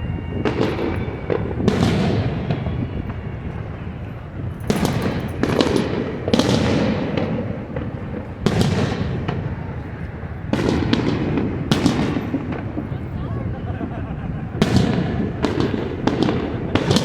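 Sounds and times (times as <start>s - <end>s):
fireworks bangs: 0.0s - 17.0s.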